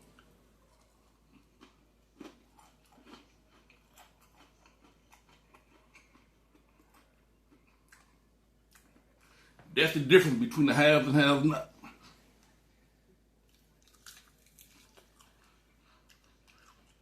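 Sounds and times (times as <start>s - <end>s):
man chewing with mouth clicks: 0.0s - 9.4s, 13.4s - 17.0s.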